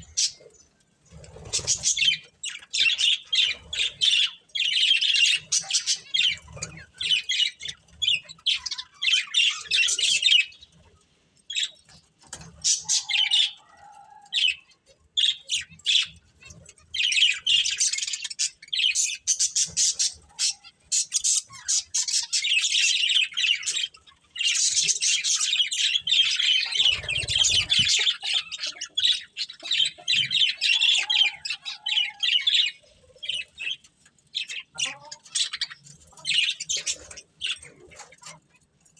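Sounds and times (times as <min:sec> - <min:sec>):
budgerigars chirping: 0:01.2 - 0:10.6, 0:17.0 - 0:33.8, 0:34.4 - 0:38.3.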